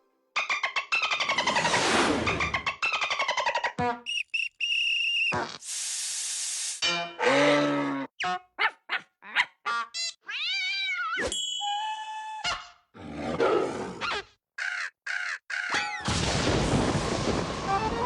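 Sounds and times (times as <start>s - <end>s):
squeaky cartoon chirps: 0.4s - 5.6s, 9.2s - 12.8s.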